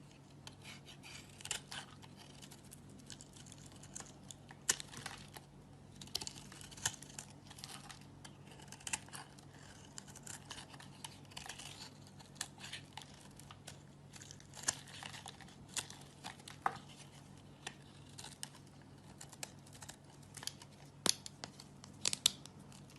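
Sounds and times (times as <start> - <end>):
faint low hum: 0.0 - 22.9
knife scraping soap: 0.1 - 5.2, 6.1 - 20.7.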